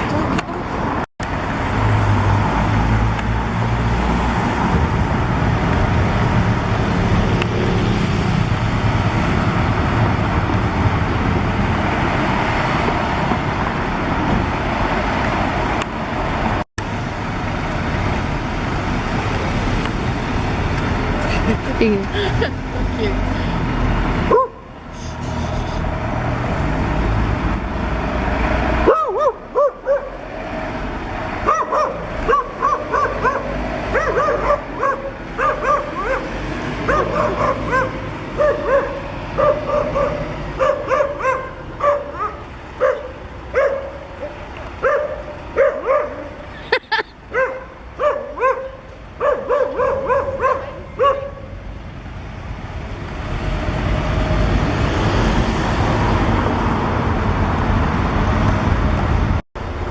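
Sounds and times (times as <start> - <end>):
vehicle noise: 0.0 - 59.9
dog barking: 24.3 - 24.7, 28.8 - 30.2, 31.4 - 46.4, 47.3 - 51.4.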